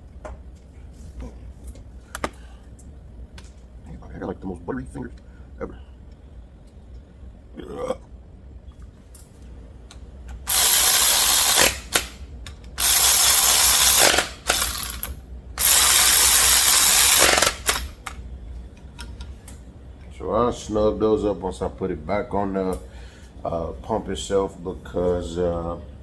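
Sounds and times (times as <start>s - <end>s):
ratchet wrench ratcheting: 10.5s - 12.2s, 12.8s - 18.0s.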